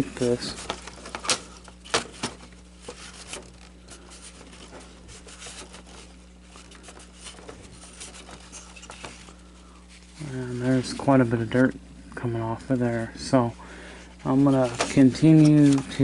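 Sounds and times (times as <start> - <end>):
cloth rag rubbing plastic: 0.0 - 11.8, 14.2 - 16.0.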